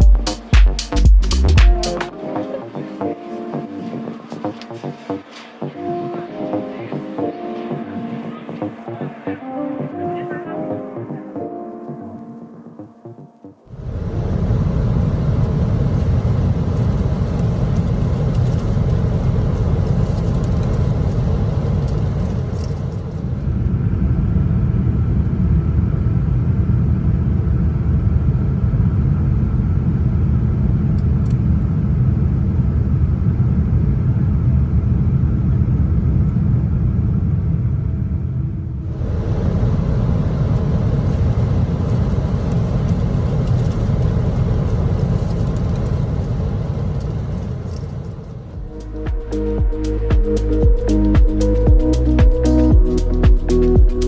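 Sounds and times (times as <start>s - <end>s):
airliner cabin engine rumble: 13.7s - 48.8s.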